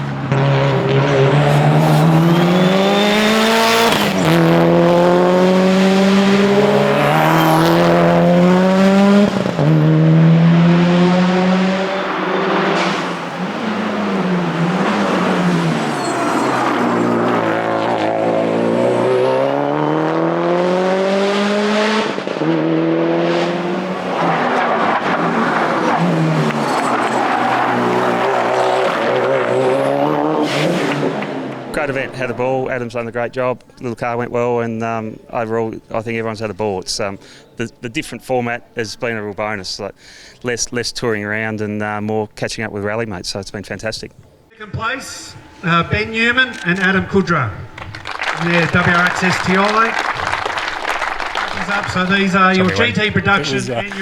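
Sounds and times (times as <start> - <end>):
rally car engine revving through gears: 0.0 - 32.5, 45.4 - 50.4.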